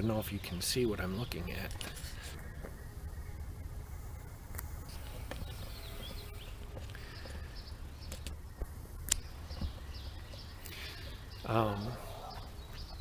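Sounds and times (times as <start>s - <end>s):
steady low rumble: 0.0s - 11.6s
faint bird chirps: 0.1s - 13.0s
sharp clicks: 8.0s - 9.3s.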